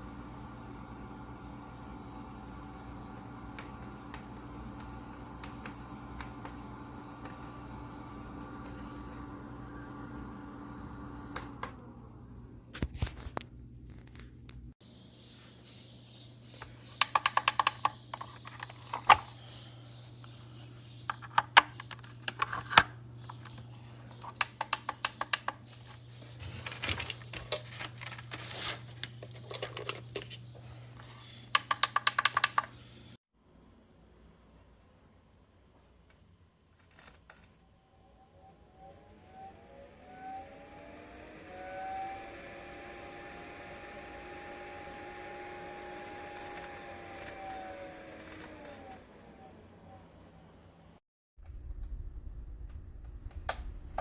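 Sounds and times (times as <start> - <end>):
steady low hum: 0.0 - 14.8, 40.9 - 54.0.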